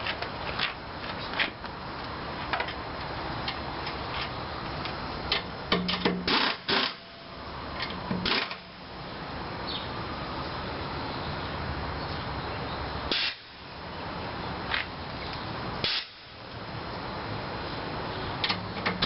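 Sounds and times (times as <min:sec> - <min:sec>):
air impact wrench bursts: 0:06.2 - 0:07.2, 0:08.2 - 0:08.6, 0:13.1 - 0:13.6, 0:15.8 - 0:16.3.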